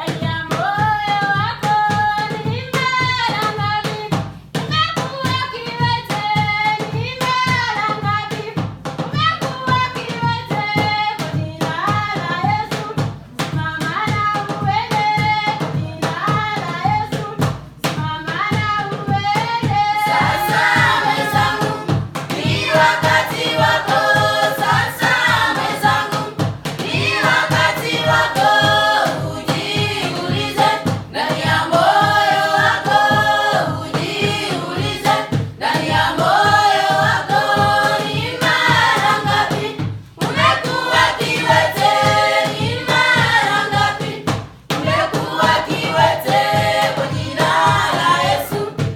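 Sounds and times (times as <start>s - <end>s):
hand claps: 0.0s - 48.9s
choir singing in harmony: 20.0s - 48.9s.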